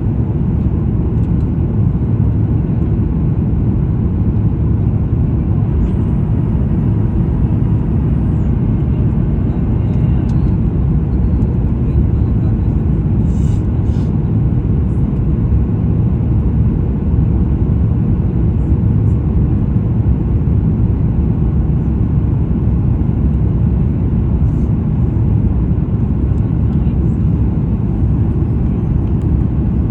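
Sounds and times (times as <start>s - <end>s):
airliner cabin engine rumble: 0.0s - 29.9s.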